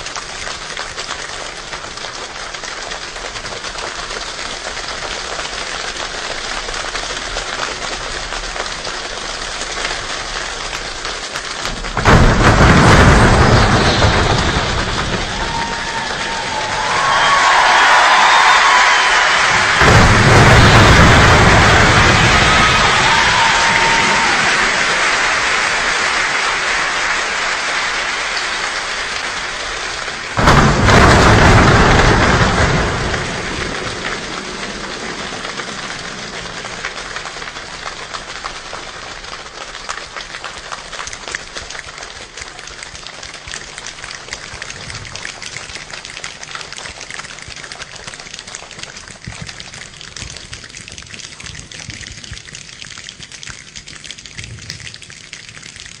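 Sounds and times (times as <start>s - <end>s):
heavy rain falling: 0.0s - 56.0s
thunder clap rumbling: 11.6s - 26.0s, 29.8s - 38.0s.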